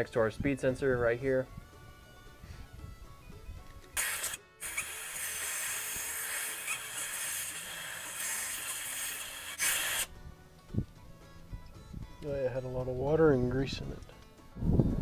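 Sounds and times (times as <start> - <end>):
aerosol spray hissing: 4.0 - 10.1.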